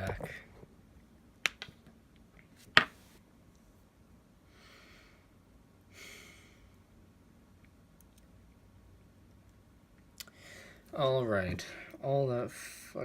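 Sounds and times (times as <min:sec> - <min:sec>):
exhaled breaths: 0:10.3 - 0:10.9.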